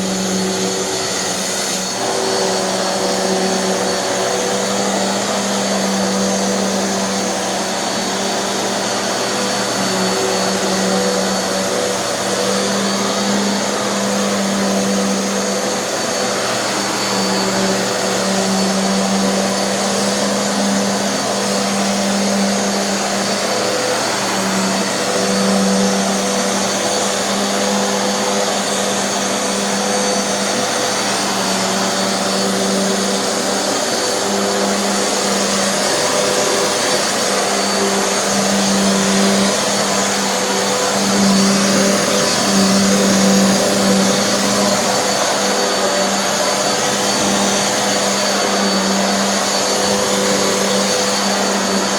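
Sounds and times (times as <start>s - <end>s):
vacuum cleaner running: 0.0s - 51.9s.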